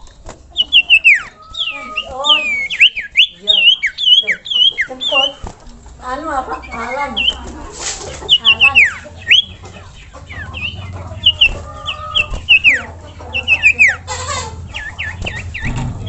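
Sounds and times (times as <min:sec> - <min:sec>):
bird whistled calls: 0:00.5 - 0:05.4, 0:06.6 - 0:07.5, 0:08.3 - 0:15.8
harsh noisy bird call: 0:00.5 - 0:05.5, 0:06.6 - 0:07.5.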